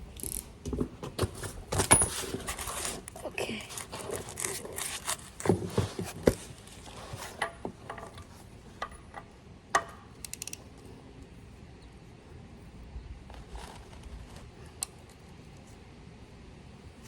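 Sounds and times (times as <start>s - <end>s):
ratchet wrench clicks: 10.2s - 10.6s.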